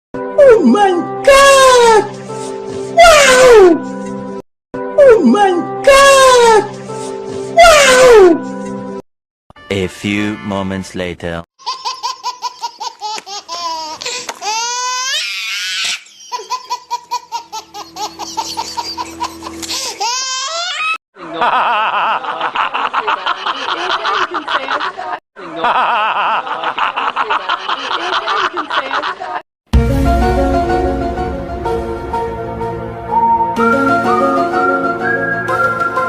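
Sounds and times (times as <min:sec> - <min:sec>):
high-pitched pulsing laughter: 0:16.2 - 0:19.6.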